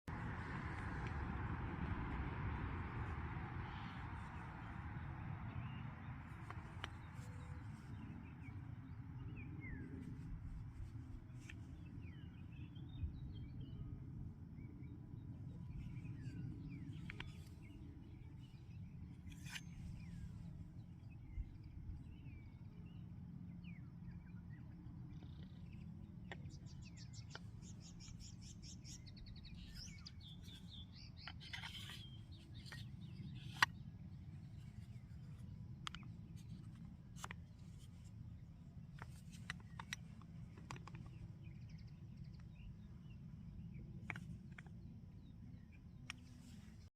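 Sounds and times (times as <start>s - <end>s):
low outdoor rumble: 0.1s - 46.9s
birds chirping and trilling: 3.6s - 46.9s.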